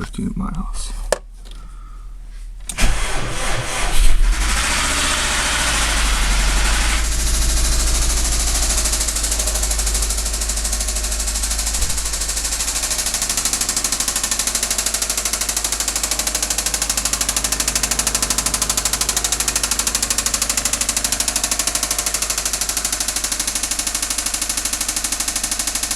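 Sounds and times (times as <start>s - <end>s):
car engine knocking: 4.3s - 25.9s.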